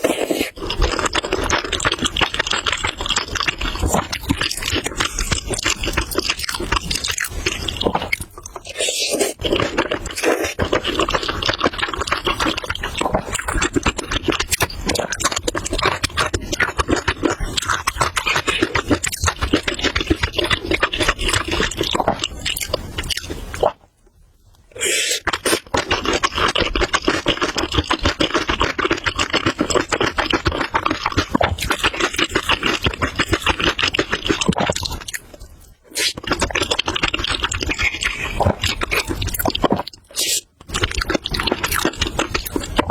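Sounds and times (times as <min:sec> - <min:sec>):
noodles being chewed: 0:00.0 - 0:23.8, 0:24.9 - 0:42.9
wet mouth clicks: 0:24.5 - 0:42.9.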